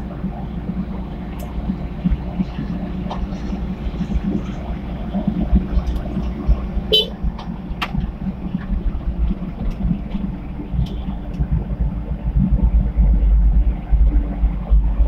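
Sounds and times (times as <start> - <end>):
diesel engine running: 0.0 - 15.0
horn toot: 6.9 - 7.1.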